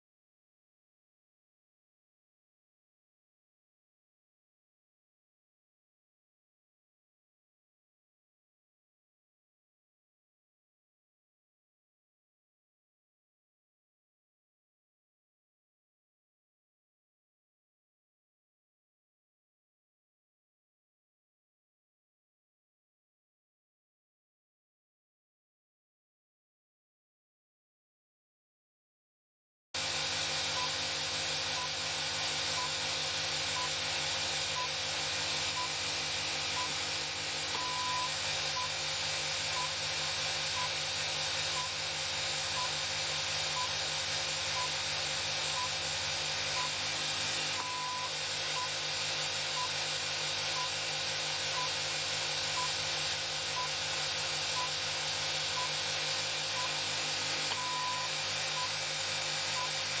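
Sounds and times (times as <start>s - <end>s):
electrical hum and hiss: 29.8s - 60.0s
longer electronic beep: 30.5s - 30.8s, 31.5s - 31.8s, 32.5s - 33.0s, 33.6s - 33.8s, 35.4s - 35.8s, 36.6s - 36.8s, 37.5s - 38.8s, 39.5s - 39.8s, 40.5s - 40.8s, 41.5s - 41.8s, 42.6s - 42.8s, 43.5s - 43.8s, 44.6s - 44.8s, 45.6s - 45.8s, 46.5s - 46.8s, 47.6s - 48.8s, 50.6s - 50.8s, 52.6s - 52.8s, 54.6s - 54.8s, 55.6s - 55.8s, 56.6s - 56.8s, 57.5s - 58.8s
short high electronic beeps: 30.6s - 30.8s, 31.5s - 31.8s, 32.5s - 33.8s, 34.4s - 35.8s, 36.4s - 36.8s, 37.5s - 38.8s, 39.5s - 39.8s, 40.5s - 40.8s, 41.5s - 41.9s, 42.6s - 42.8s, 43.5s - 43.8s, 44.6s - 44.8s, 45.6s - 45.8s, 47.6s - 48.8s, 50.6s - 50.9s, 51.6s - 51.8s, 52.6s - 52.8s, 54.6s - 54.8s, 55.6s - 55.8s, 56.6s - 56.9s, 57.5s - 58.8s, 59.5s - 59.8s.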